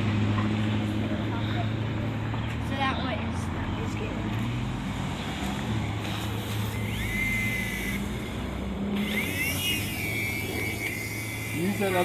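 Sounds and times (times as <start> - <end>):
toy helicopter rotor humming: 6.0 - 12.0.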